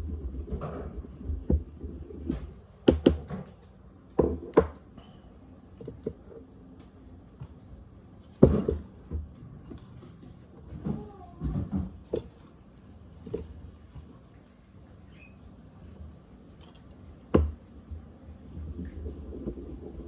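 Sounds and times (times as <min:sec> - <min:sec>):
pestle knocking in mortar: 0:08.4 - 0:09.9.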